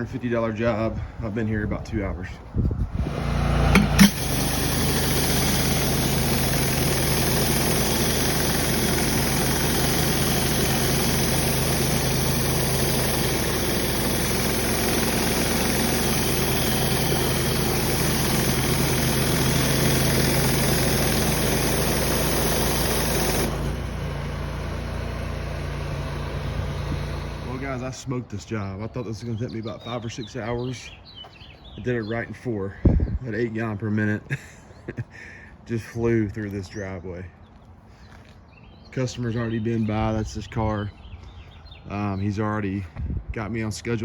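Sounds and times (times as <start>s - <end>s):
pressure washer engine running: 3.0s - 27.8s
high-pressure water spray hiss: 4.0s - 24.2s.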